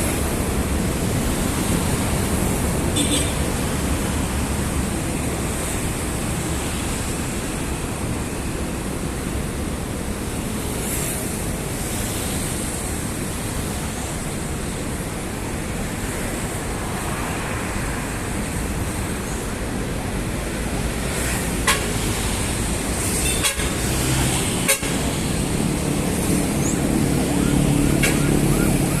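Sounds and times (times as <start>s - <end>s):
city road traffic: 0.0s - 29.0s
engine approaching: 25.2s - 29.0s.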